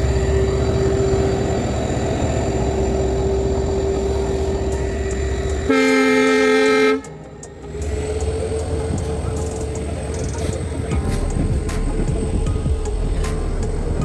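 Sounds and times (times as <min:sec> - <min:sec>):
train horn blast: 0:00.0 - 0:09.4
train rumble and whine: 0:00.0 - 0:14.0.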